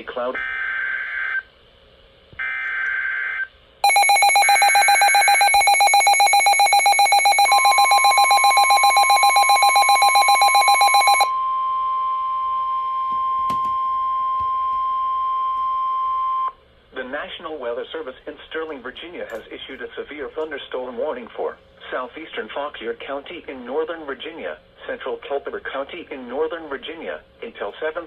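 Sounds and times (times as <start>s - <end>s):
pulsing two-tone attention signal: 3.8s - 11.6s
steady single-pitched warning tone: 3.8s - 16.6s.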